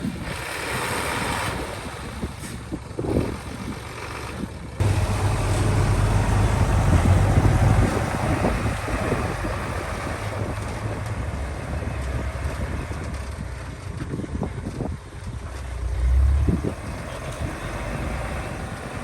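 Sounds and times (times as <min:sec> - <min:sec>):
heavy machinery diesel engine: 0:00.0 - 0:19.0
strong low hum: 0:04.8 - 0:13.6, 0:15.4 - 0:19.0.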